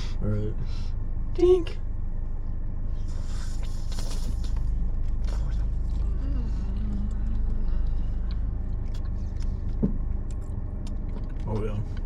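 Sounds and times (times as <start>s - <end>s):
car engine rumble inside cabin: 0.0s - 12.0s
person humming: 5.7s - 8.3s.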